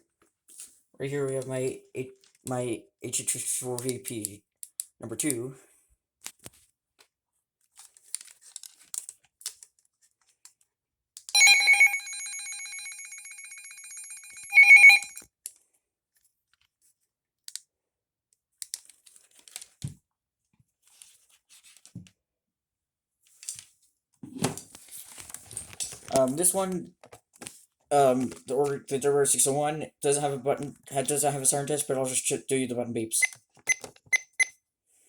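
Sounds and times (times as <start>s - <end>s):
electronic alarm tone with trill: 11.4s - 15.2s.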